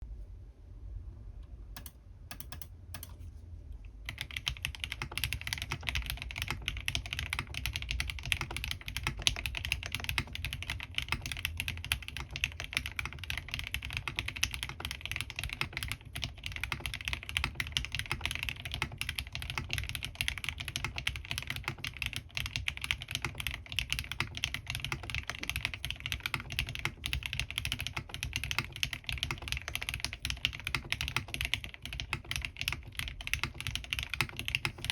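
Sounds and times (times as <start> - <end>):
typing on mechanical keyboard: 1.8 - 3.2, 4.1 - 34.9.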